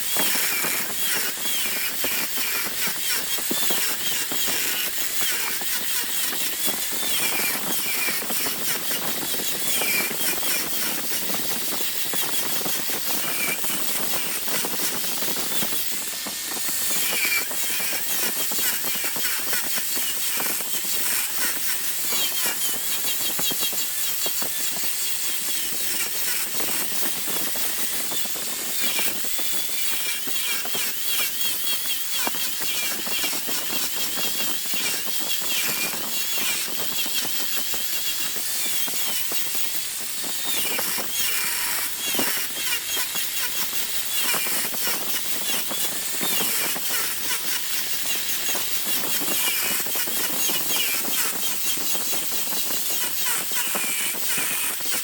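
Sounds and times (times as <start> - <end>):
lathe tool scraping wood: 0.0 - 55.0.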